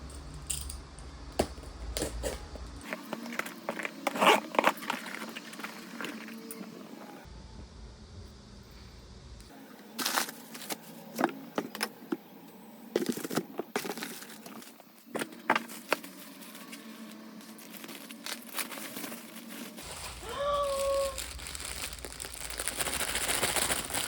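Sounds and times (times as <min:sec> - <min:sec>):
plastic and paper packaging rustling: 0:02.8 - 0:06.8, 0:10.0 - 0:11.8, 0:13.0 - 0:24.0.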